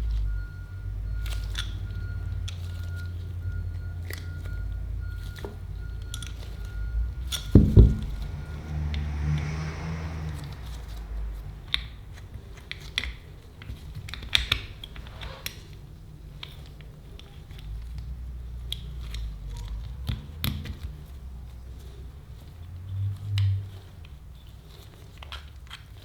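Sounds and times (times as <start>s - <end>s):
loud knocks: 7.5s - 8.4s.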